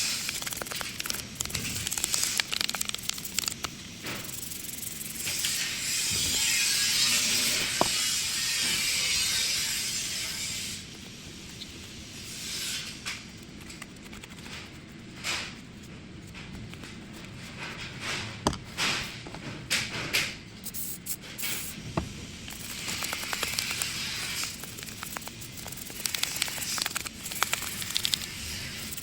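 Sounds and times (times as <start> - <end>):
clicks and knocks of small parts: 0.0 - 5.6, 22.5 - 29.0
scraping of small parts: 0.0 - 21.8, 22.4 - 29.0.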